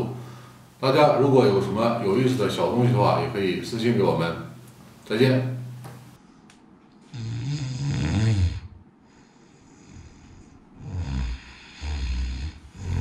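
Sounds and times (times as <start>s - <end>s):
person snoring: 7.1s - 13.0s.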